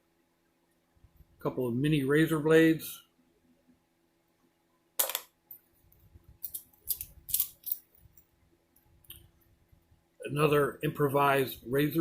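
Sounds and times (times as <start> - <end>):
metal tools clicking: 6.4 - 8.2.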